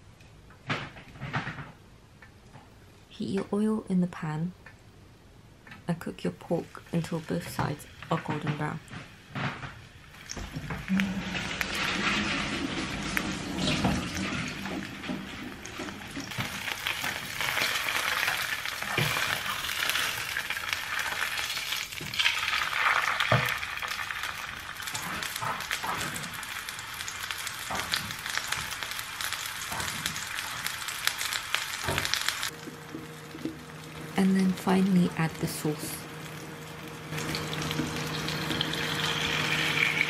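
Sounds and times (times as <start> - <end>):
meat sizzling in hot oil: 10.1 - 35.0, 35.6 - 40.0.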